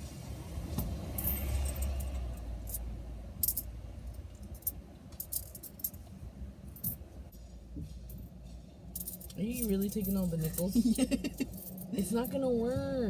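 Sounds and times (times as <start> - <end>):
coins clinking: 9.0 - 12.4.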